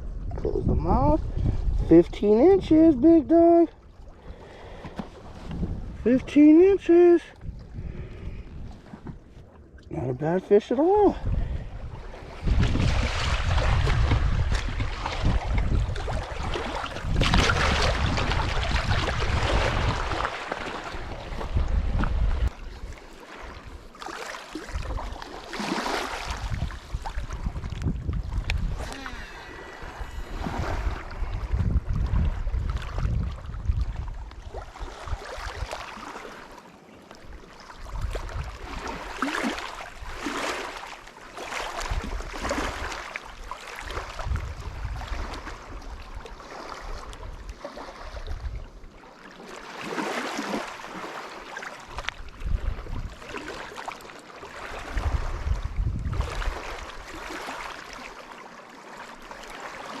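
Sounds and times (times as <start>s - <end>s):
wind buffeting microphone: 0.0s - 9.8s, 11.0s - 23.0s, 26.2s - 35.9s, 37.8s - 40.2s, 43.8s - 48.8s, 51.9s - 53.4s, 54.7s - 57.1s.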